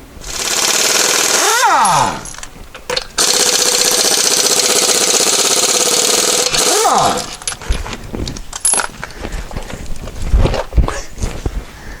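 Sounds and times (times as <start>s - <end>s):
impact wrench hammering: 0.4s - 7.6s.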